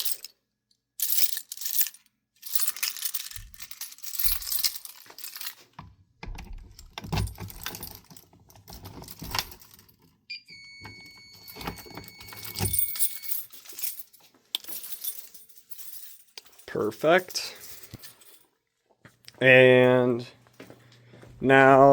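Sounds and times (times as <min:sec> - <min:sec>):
keys jangling: 0:00.0 - 0:00.3, 0:01.0 - 0:05.8, 0:06.4 - 0:10.2, 0:10.8 - 0:18.6
metal parts clicking and rattling: 0:00.0 - 0:00.4, 0:01.0 - 0:10.1, 0:11.4 - 0:18.5
high electronic beep: 0:10.3 - 0:13.3.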